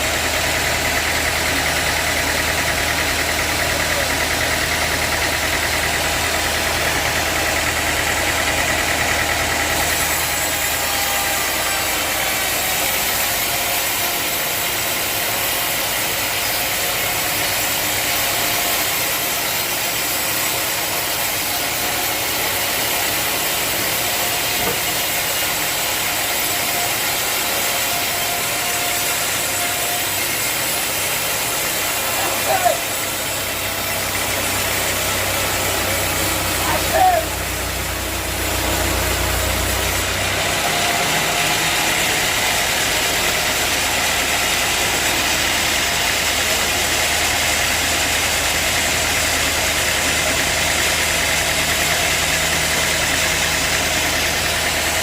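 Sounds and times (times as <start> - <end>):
sawmill engine running: 0.0 - 55.0.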